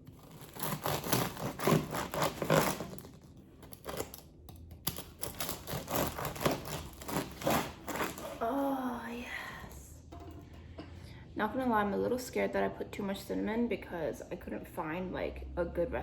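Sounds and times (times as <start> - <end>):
bread knife sawing through crust: 0.0 - 4.2, 4.9 - 8.4.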